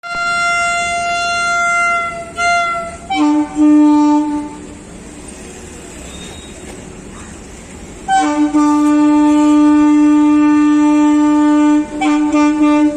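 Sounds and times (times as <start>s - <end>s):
twin-tone locomotive horn: 0.0s - 4.9s, 8.0s - 12.9s
locomotive running noise: 0.1s - 12.9s.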